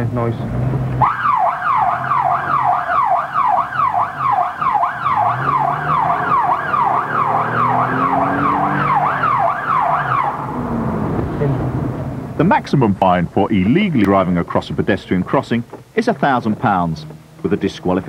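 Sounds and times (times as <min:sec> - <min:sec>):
car engine: 0:00.0 - 0:18.0
police siren sweeping rapidly: 0:01.0 - 0:11.9.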